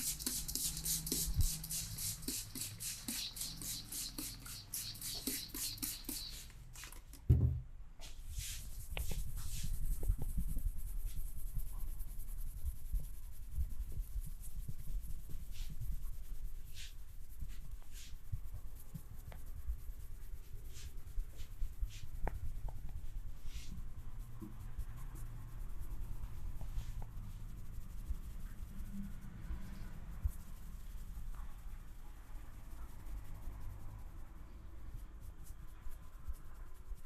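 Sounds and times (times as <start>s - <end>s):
hands rubbing skin and hair: 0.0s - 7.3s, 8.0s - 29.3s.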